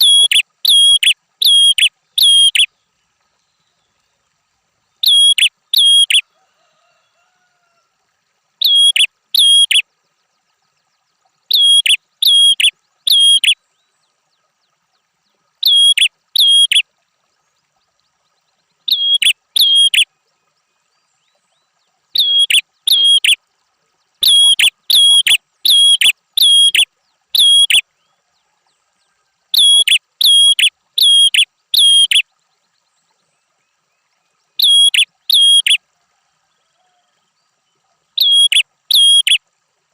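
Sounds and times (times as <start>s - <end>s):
bird chirping sharply: 5.0s - 6.2s, 8.6s - 9.8s, 11.5s - 13.6s, 15.6s - 16.8s, 18.9s - 20.0s, 22.2s - 23.4s, 34.6s - 35.8s, 38.2s - 39.4s.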